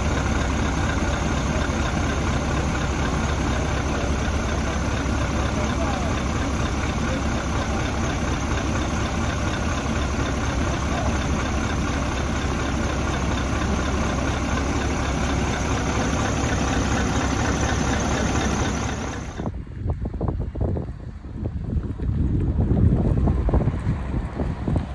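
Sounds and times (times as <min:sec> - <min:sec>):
diesel truck engine idling: 0:00.0 - 0:19.8.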